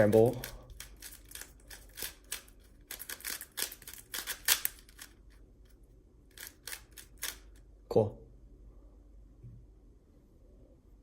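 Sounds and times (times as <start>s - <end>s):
puzzle cube layers clicking: 0.2s - 5.1s, 6.3s - 7.5s.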